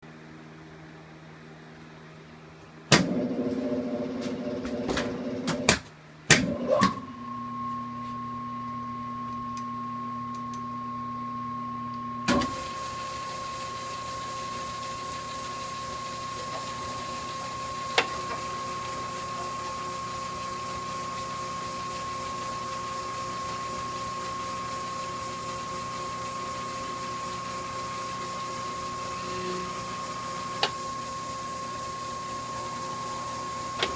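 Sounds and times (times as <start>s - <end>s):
lathe running hum with whine: 7.0s - 33.9s.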